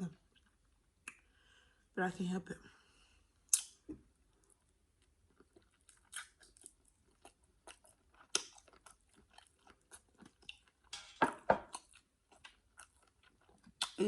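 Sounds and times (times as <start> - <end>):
wet chewing mouth smacks: 5.4 - 9.5.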